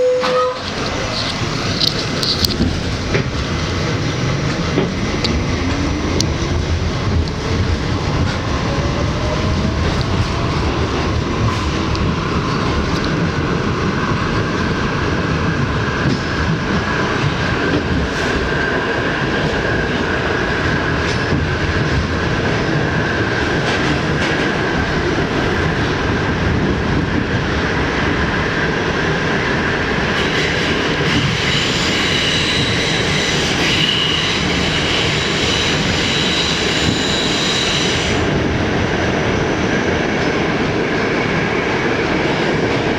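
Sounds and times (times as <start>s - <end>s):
subway car rumbling and rattling: 0.0s - 42.9s
high squeal: 30.4s - 38.3s.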